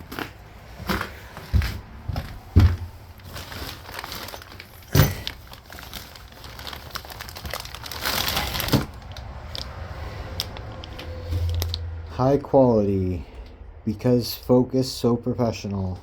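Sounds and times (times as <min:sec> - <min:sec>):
packaging crinkling: 0:02.8 - 0:11.8.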